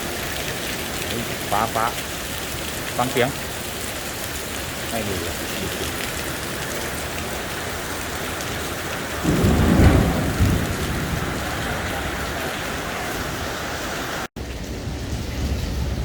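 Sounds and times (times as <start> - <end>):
heavy rain pouring: 0.0 - 16.0
thunder rumble: 5.2 - 16.0.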